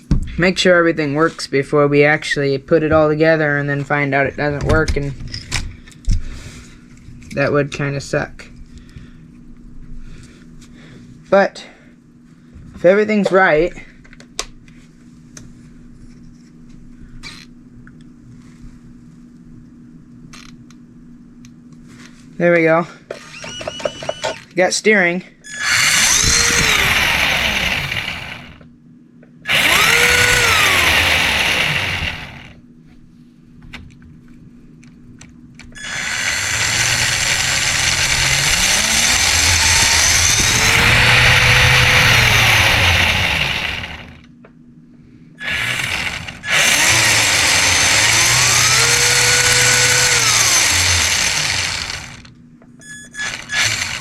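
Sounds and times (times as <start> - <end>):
electric motor and gears whining: 23.2 - 24.4, 25.5 - 28.6, 29.5 - 32.6, 35.8 - 44.3, 45.4 - 52.3, 53.2 - 54.0.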